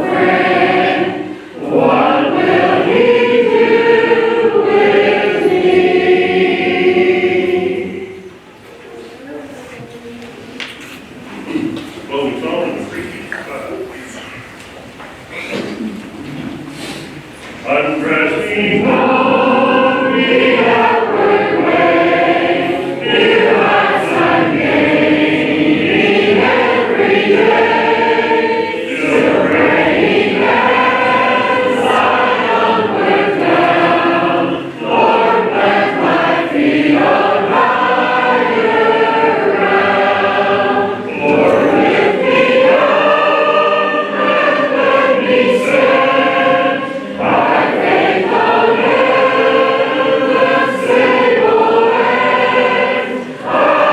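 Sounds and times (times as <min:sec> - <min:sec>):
congregation singing a hymn: 0:00.0 - 0:53.9.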